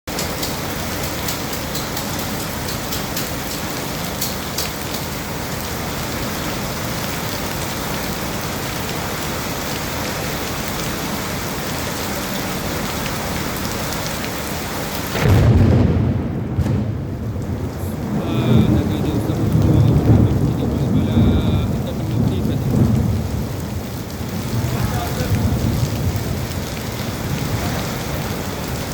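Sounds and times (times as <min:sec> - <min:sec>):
heavy rain falling: 0:00.1 - 0:28.9
deep thunderclap: 0:15.1 - 0:28.9.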